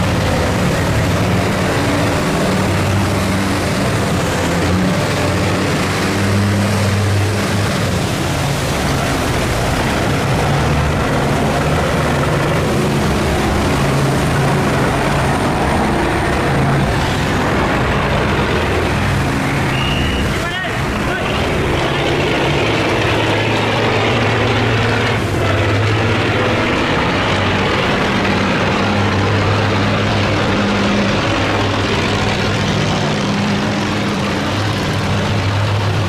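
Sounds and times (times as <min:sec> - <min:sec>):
boat engines droning: 0:00.0 - 0:36.0
loud steady rushing noise: 0:00.0 - 0:36.0.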